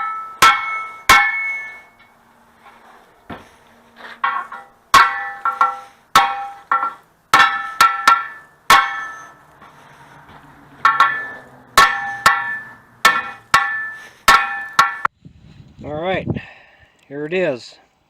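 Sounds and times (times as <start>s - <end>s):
struck metal clanging: 0.0s - 2.2s, 3.3s - 15.1s.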